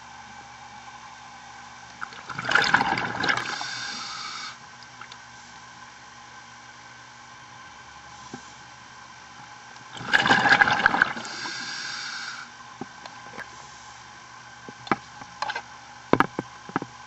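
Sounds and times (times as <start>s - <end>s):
steady low hum: 0.0s - 17.0s
exhaled bubbles underwater: 2.0s - 4.3s, 9.9s - 12.0s
hiss of air from regulator: 3.4s - 4.6s, 8.1s - 8.7s, 11.2s - 12.6s.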